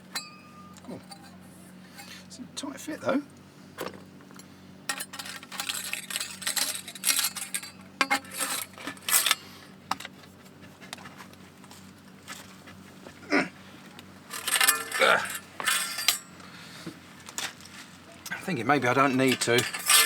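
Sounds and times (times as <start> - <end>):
small metal parts clinking: 0.1 - 2.3, 4.2 - 10.2, 14.0 - 20.0.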